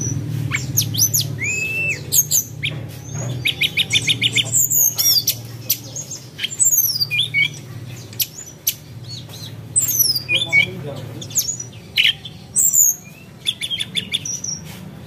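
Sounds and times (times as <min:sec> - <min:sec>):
birds chirping and squawking: 0:00.0 - 0:15.0.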